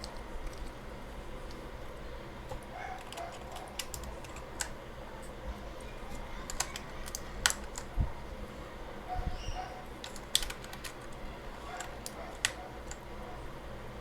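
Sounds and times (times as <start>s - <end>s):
keycaps clicking onto keyboard: 0.0s - 0.8s, 2.5s - 5.4s, 6.4s - 7.9s, 10.0s - 13.1s.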